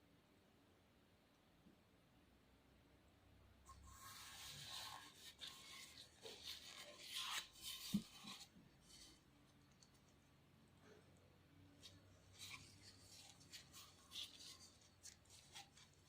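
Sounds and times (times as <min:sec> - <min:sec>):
camera rubbing and scraping: 0:03.8 - 0:08.6.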